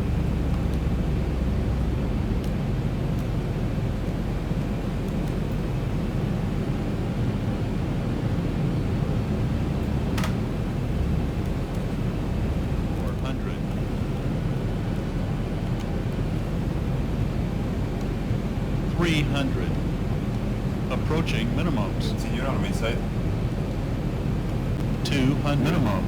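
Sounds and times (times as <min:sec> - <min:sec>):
airliner cockpit noise: 0:00.0 - 0:26.0.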